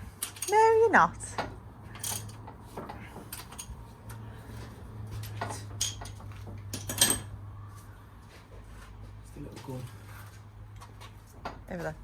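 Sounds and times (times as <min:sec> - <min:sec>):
metal tools clinking on metal: 0:00.2 - 0:00.9, 0:01.9 - 0:02.5, 0:03.1 - 0:03.8, 0:05.2 - 0:07.4.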